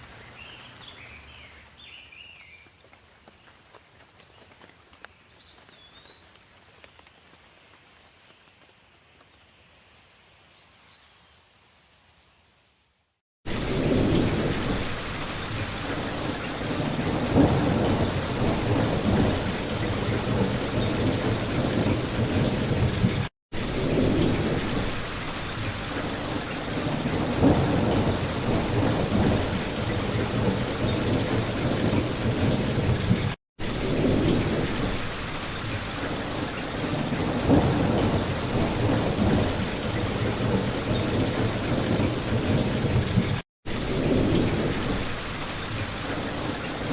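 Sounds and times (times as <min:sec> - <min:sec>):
deep rolling thunder: 0:13.5 - 0:46.9
heavy rain: 0:13.5 - 0:46.9.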